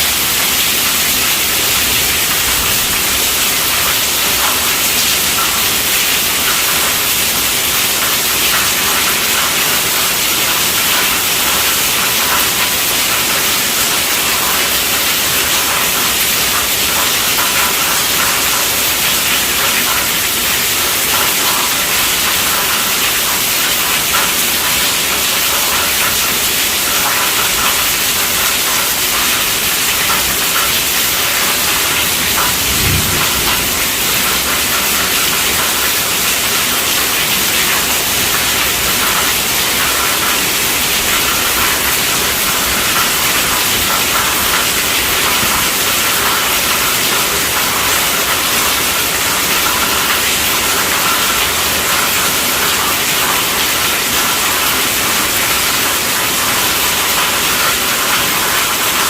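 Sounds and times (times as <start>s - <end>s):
steady rainfall: 0.0s - 59.0s
low thump: 32.7s - 33.8s.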